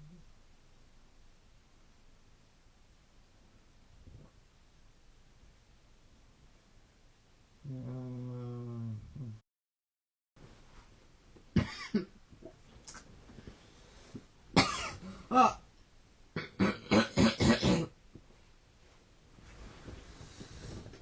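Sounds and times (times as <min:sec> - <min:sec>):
man coughing in harsh bursts: 0:11.6 - 0:12.1, 0:14.6 - 0:15.6, 0:16.4 - 0:18.0.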